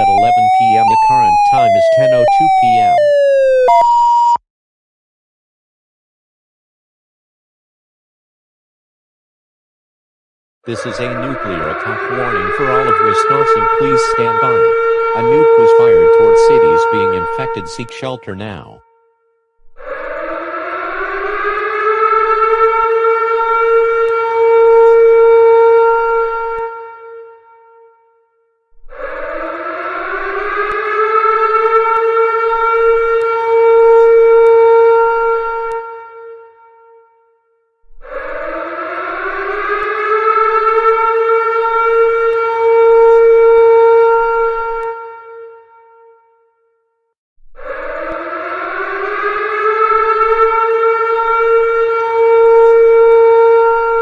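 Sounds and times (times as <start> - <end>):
air-raid siren wailing: 0.0 - 4.4, 10.7 - 18.8, 19.8 - 28.2, 28.9 - 37.2, 38.0 - 46.4, 47.6 - 54.0.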